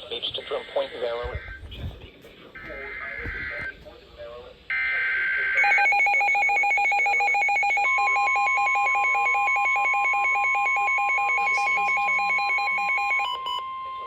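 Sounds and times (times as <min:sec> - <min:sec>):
long steady alarm tone: 0:04.7 - 0:14.0.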